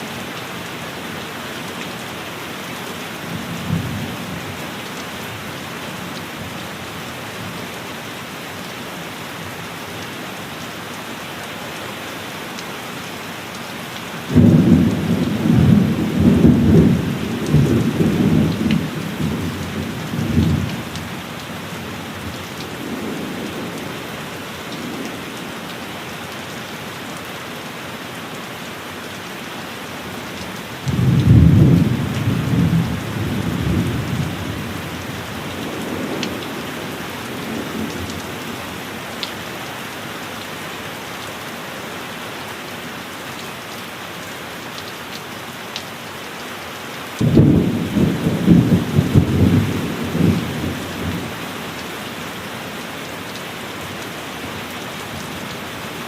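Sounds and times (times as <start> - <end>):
heavy rain: 0.0 - 56.0
thunder rumbling: 14.3 - 21.0, 30.9 - 38.5, 47.2 - 51.3.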